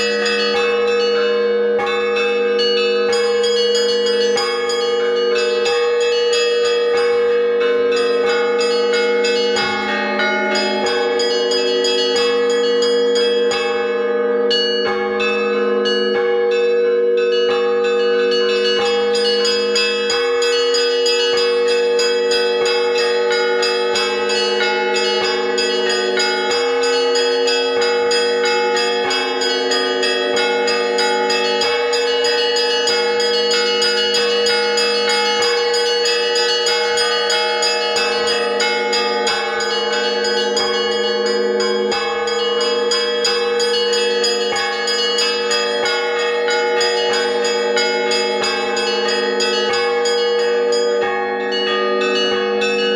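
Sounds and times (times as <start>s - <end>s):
church bells pealing: 0.0s - 52.9s.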